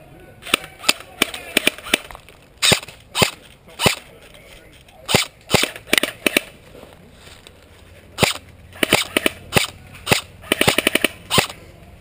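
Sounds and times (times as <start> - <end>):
airsoft rifle shots: 0.4 - 4.1, 5.1 - 6.5, 8.2 - 11.6.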